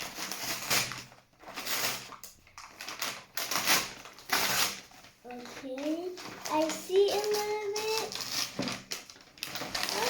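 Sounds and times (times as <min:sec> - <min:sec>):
packaging being torn open: 0:00.0 - 0:04.8, 0:07.1 - 0:10.0.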